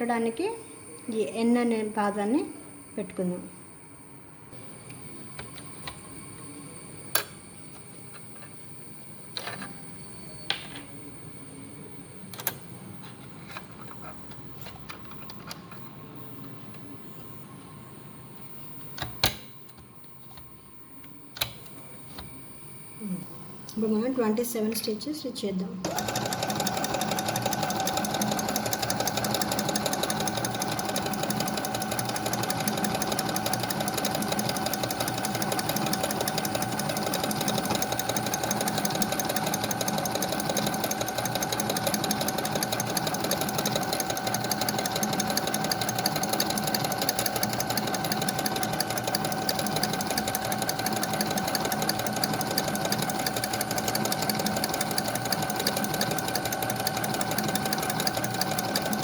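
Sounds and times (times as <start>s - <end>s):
sewing machine motor hum: 25.9s - 59.0s
sewing machine needle rattle: 25.9s - 59.0s.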